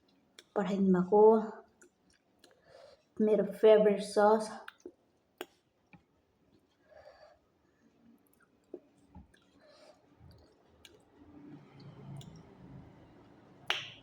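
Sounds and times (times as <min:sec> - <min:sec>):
soft chewing: 0:01.6 - 0:03.2, 0:04.6 - 0:13.4.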